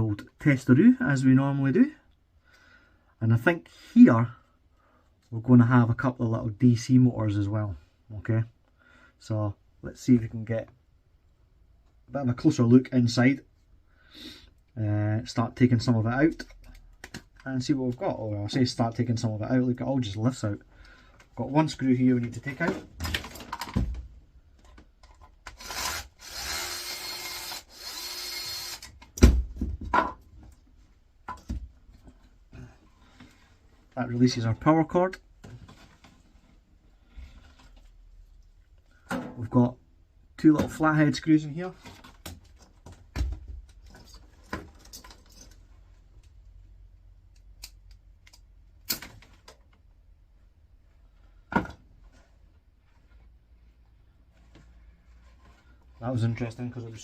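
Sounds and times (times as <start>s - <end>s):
screwdriver grinding on screw: 25.5s - 28.9s.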